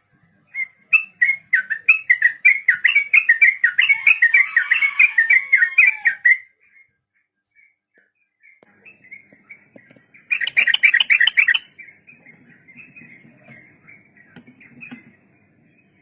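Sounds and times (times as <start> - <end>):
bird rolling song phrase: 0.4 - 6.9, 8.4 - 16.0
bulbul chirping: 0.6 - 4.4, 10.2 - 12.0.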